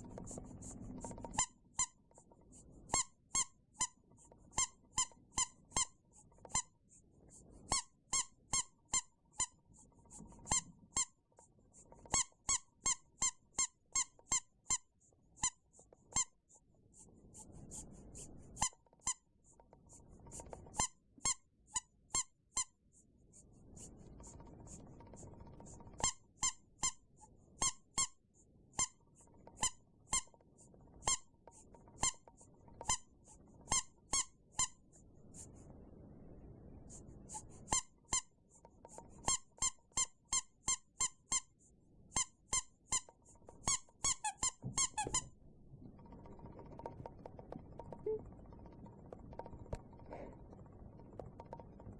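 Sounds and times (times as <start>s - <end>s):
rubber duck squeaking: 2.9s - 6.7s, 10.5s - 11.2s, 12.0s - 16.4s, 26.0s - 27.0s, 27.6s - 28.2s, 31.0s - 31.3s, 31.9s - 32.2s, 33.7s - 34.8s, 37.3s - 38.3s, 38.9s - 41.5s, 42.1s - 45.4s, 47.7s - 48.4s.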